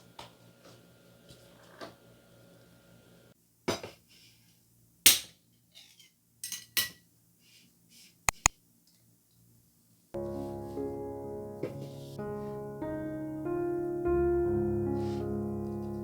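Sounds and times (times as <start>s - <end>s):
quick clicks: 8.3s - 8.5s.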